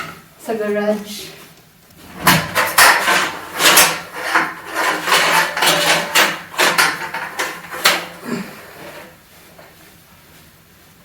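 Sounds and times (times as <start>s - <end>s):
knocks and scrapes of panels: 2.0s - 8.2s.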